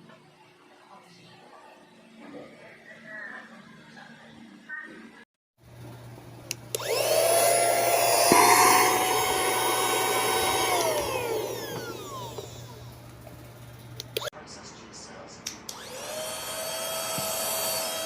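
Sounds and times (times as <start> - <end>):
vacuum cleaner switch click: 6.5 - 7.2
vacuum cleaner motor whining: 6.6 - 14.3, 15.7 - 18.0.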